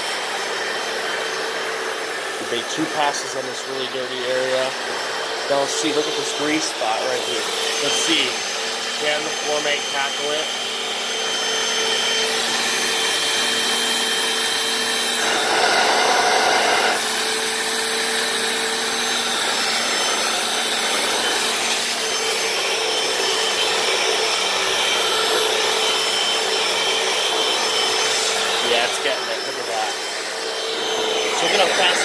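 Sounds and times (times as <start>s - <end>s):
floor cleaner motor whining: 0.0s - 32.0s
brushes scrubbing floor: 13.5s - 17.3s, 26.7s - 32.0s.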